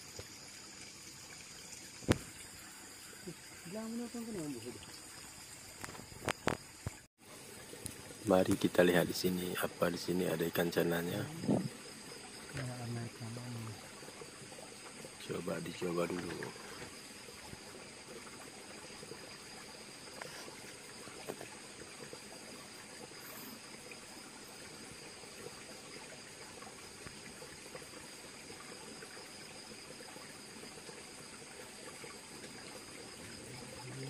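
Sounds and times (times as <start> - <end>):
high insect buzz: 0.0 - 34.0
water trickling over rocks: 0.0 - 34.0.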